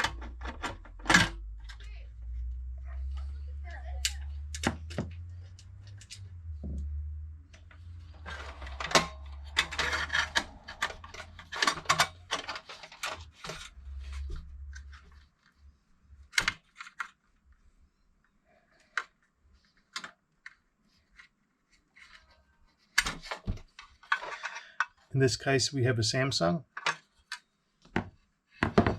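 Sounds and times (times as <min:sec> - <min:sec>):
low steady hum: 0:00.0 - 0:15.2
computer parts clicking and rattling: 0:07.6 - 0:13.8.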